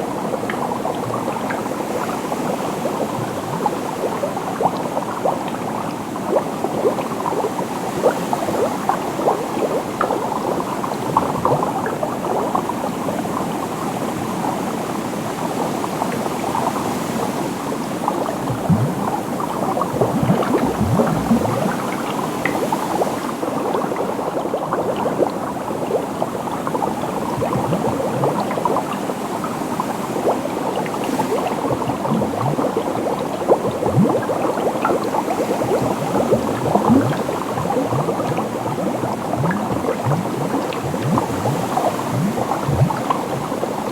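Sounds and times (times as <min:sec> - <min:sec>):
liquid bubbling: 0:00.0 - 0:43.9
deep gurgling pops: 0:15.8 - 0:43.9.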